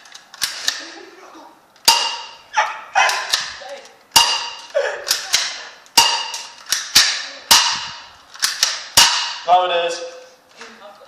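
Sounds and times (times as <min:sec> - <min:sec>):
bb gun firing: 0:04.2 - 0:09.5.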